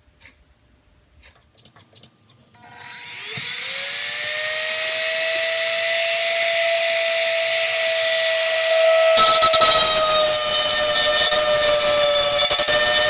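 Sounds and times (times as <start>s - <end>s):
drill grinding through steel rivet: 2.6s - 13.0s
power drill motor whining: 2.6s - 13.0s.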